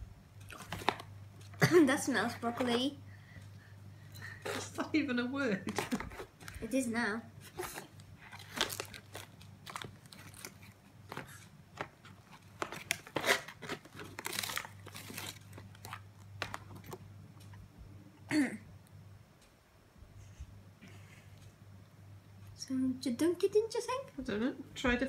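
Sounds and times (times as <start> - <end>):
crunching and chewing: 0.4 - 1.6, 7.4 - 17.0.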